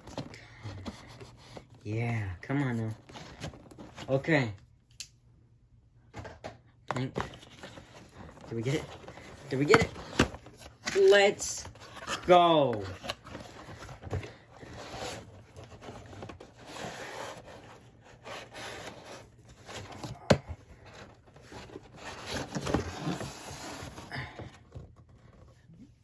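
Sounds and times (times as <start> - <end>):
cardboard box rummaging: 2.7 - 4.3, 7.0 - 25.6.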